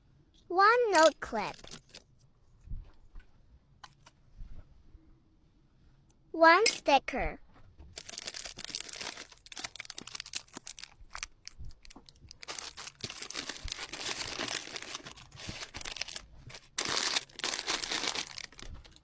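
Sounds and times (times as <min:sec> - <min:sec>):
plastic packaging crinkling: 0:07.9 - 0:19.0.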